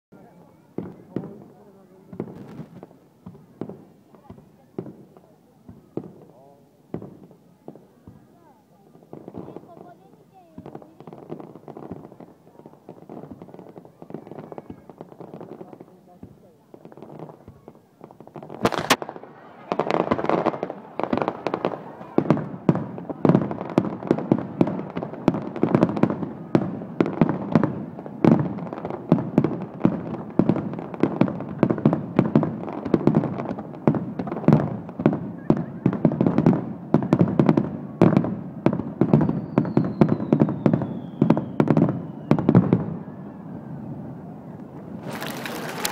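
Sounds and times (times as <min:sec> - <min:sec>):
fireworks booming and crackling: 0:00.1 - 0:45.9
falling firework whistle: 0:39.1 - 0:44.3.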